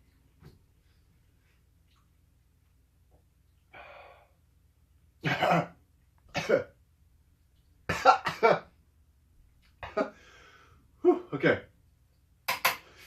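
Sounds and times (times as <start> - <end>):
man coughing: 5.2 - 6.7, 7.9 - 8.7, 9.8 - 10.2.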